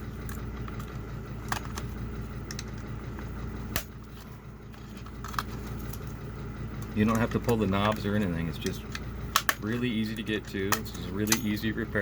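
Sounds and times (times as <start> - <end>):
steady low hum: 0.0 - 12.0
plastic housing clicking apart: 0.3 - 2.8, 6.8 - 11.5.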